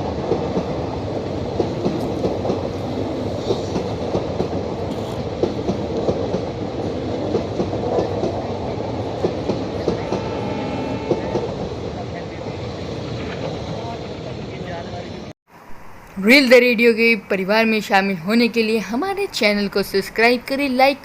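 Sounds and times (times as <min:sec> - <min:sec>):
wheels clacking over rail joints: 0:00.0 - 0:15.0
train rumbling on rails: 0:00.0 - 0:15.4.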